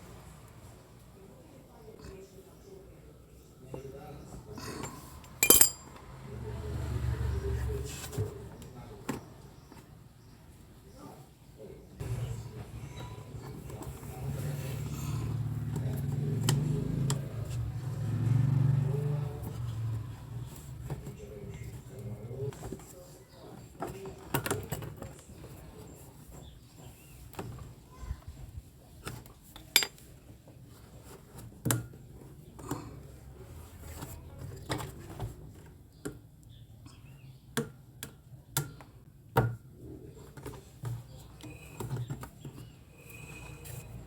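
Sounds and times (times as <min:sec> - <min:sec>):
washing machine parts clicking: 0:05.4 - 0:06.0.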